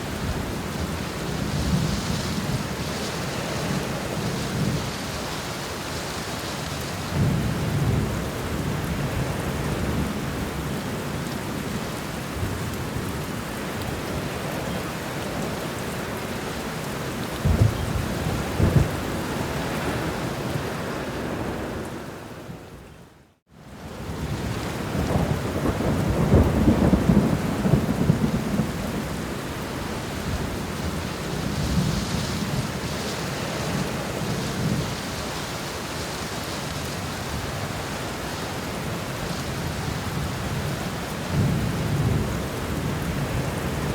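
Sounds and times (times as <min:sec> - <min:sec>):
heavy rain: 0:00.0 - 0:43.9
thunder rumbling: 0:17.3 - 0:21.8, 0:24.2 - 0:35.0
close thunder cracks: 0:17.4 - 0:19.2, 0:25.0 - 0:29.1.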